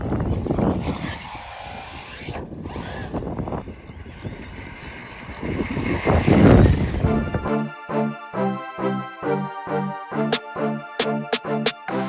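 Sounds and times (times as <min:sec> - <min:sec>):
wind buffeting microphone: 0:00.0 - 0:07.5
faint high whine: 0:02.9 - 0:07.5.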